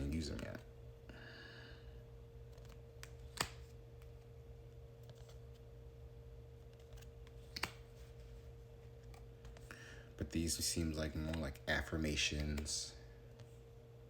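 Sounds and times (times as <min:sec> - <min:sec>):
low steady hum: 0:00.0 - 0:14.0
sharp clicks of cards: 0:02.5 - 0:03.7, 0:06.7 - 0:07.9.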